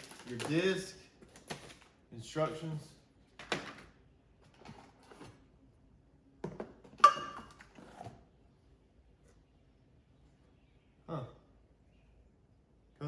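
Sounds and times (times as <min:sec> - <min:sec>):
packaging rustling: 0:00.0 - 0:02.0.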